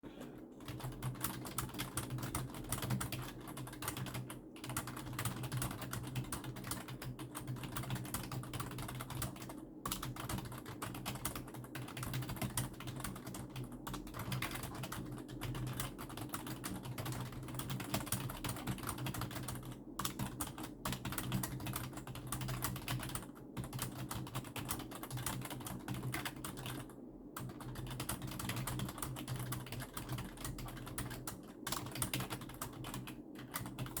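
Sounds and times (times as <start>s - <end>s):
fast keyboard typing: 0.6s - 34.0s.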